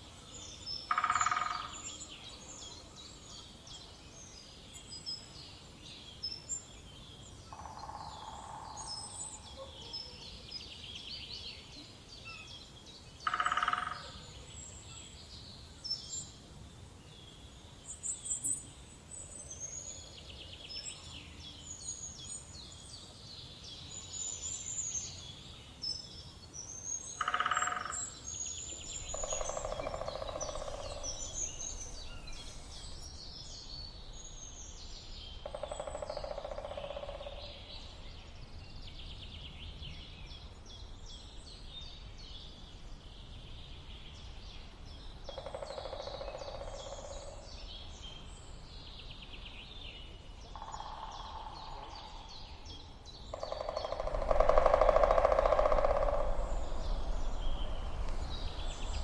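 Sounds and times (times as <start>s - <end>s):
low rattling call: 0.9s - 1.9s, 13.2s - 14.3s, 27.0s - 33.1s, 35.4s - 37.7s, 50.5s - 59.0s
small birds chirping and singing: 17.0s - 59.0s.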